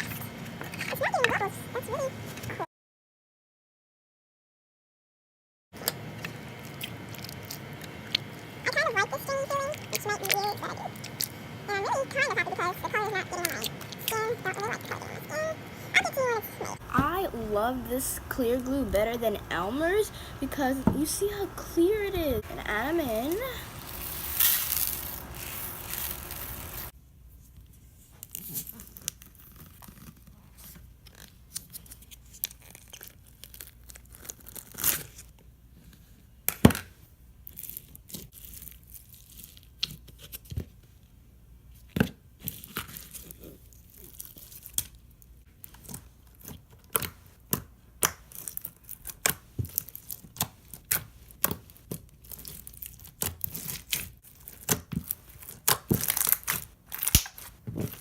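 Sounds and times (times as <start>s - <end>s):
slime rustling hiss: 16.8s - 26.9s
slime crackling and popping: 22.8s - 26.9s, 52.2s - 57.6s.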